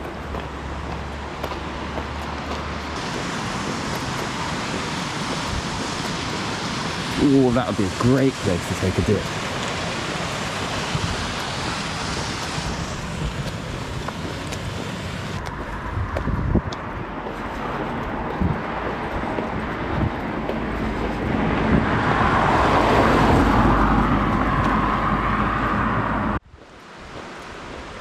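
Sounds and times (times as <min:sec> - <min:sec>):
outdoor ambient wash: 0:00.0 - 0:28.0
vehicle passing on road: 0:00.0 - 0:28.0.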